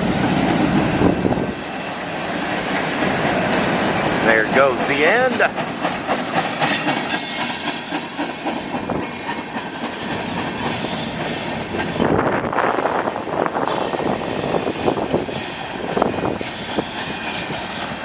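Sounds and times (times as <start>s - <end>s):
train wheels rolling on rails: 0.0s - 18.0s
high wheel squeal: 4.8s - 18.0s.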